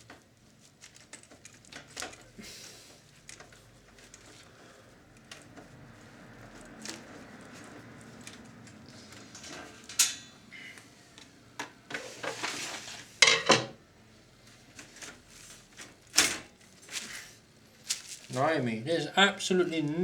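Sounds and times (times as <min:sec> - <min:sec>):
scraping and small clicks: 0:00.1 - 0:02.2.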